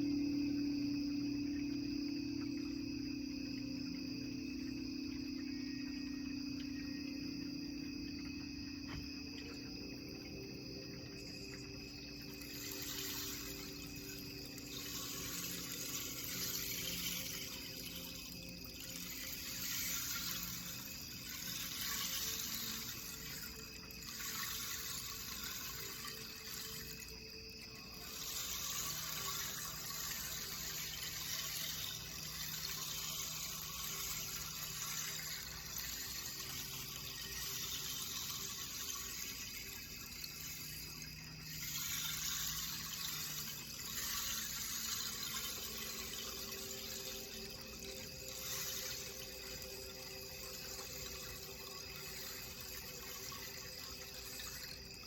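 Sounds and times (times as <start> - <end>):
rushing water-like hiss: 9.4 - 55.0.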